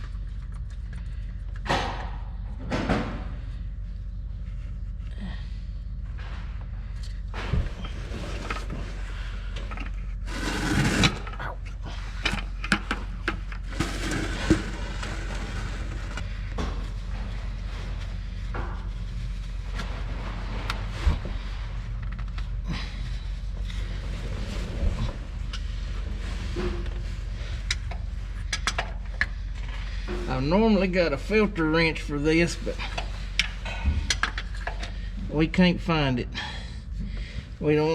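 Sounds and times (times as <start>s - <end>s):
steady low hum: 0.0s - 37.9s
hand tools knocking and scraping: 12.2s - 16.8s.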